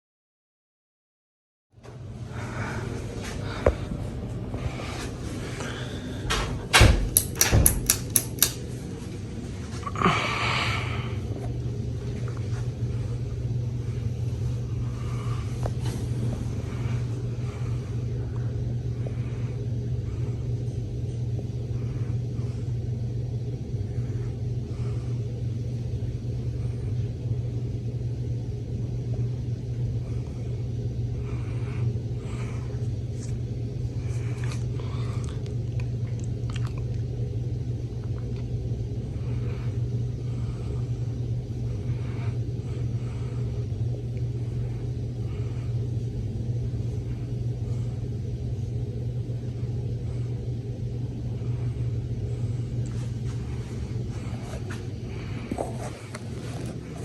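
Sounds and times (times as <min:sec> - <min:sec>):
ceiling fan motor humming: 0:01.8 - 0:57.0
sharp click: 0:07.1 - 0:08.6.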